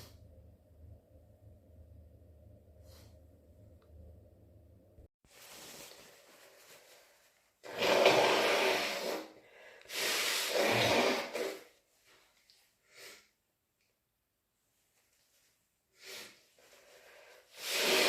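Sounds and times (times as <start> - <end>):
person blowing nose: 7.6 - 11.7, 16.0 - 16.4, 17.5 - 18.0.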